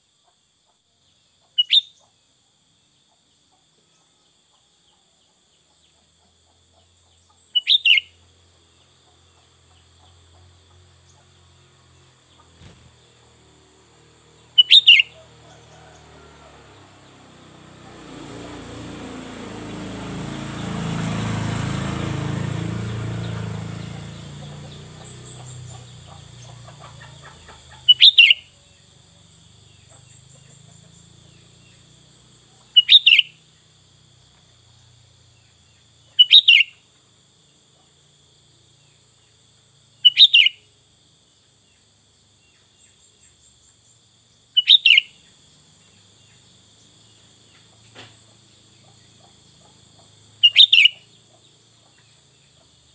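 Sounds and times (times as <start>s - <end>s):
bulbul calls: 1.4s - 2.2s, 6.7s - 8.2s, 14.4s - 16.0s, 23.9s - 33.5s, 35.4s - 36.8s, 40.0s - 40.7s, 44.5s - 46.5s, 47.2s - 52.7s.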